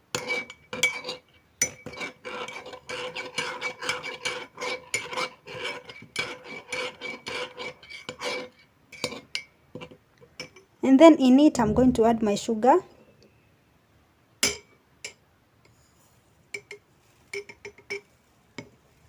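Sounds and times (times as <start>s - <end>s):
spoon scraping inside mug: 0.1s - 10.5s.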